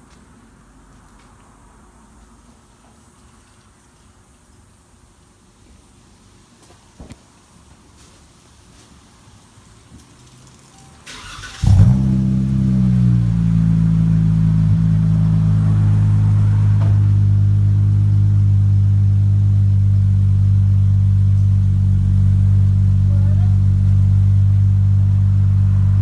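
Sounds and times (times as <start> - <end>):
car engine cranking: 11.1 - 18.8.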